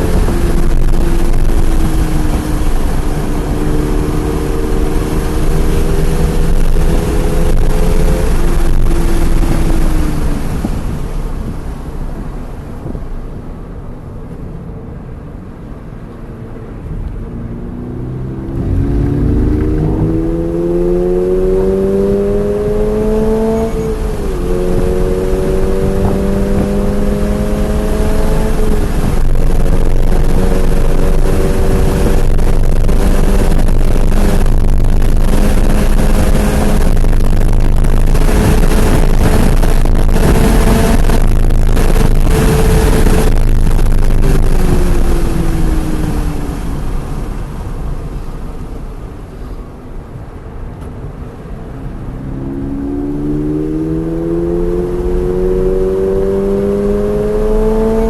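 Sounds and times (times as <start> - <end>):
car engine revving: 0.0 - 12.6, 15.9 - 49.2, 50.5 - 58.0
wind noise: 0.0 - 58.0.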